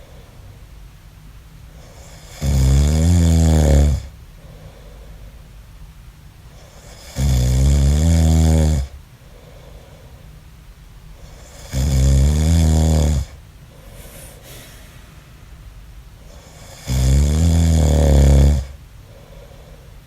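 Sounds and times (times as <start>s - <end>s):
man snoring: 2.0s - 4.1s, 6.8s - 9.0s, 11.4s - 13.4s, 16.4s - 18.8s.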